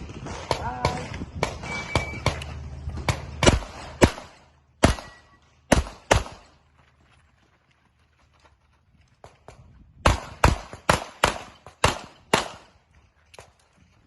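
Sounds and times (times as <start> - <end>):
pistol shots: 0.1 - 6.6, 10.0 - 12.8.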